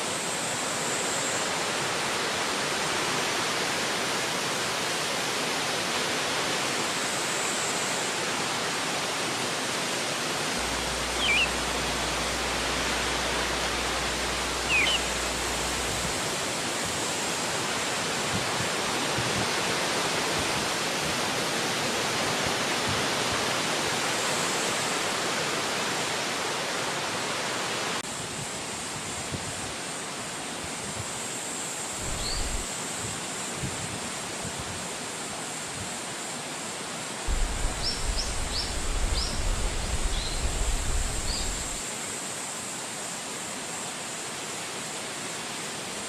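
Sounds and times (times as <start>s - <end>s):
wind through trees: 0.0s - 46.0s
high chirps: 10.6s - 16.2s.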